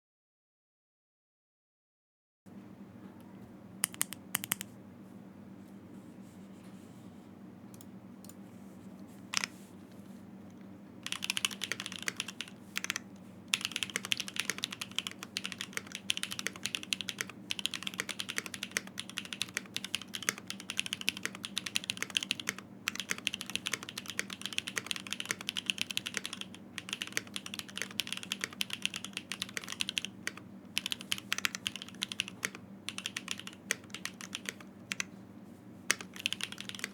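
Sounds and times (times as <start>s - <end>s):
mechanical keyboard typing: 3.8s - 4.7s, 11.0s - 35.1s, 35.9s - 36.9s.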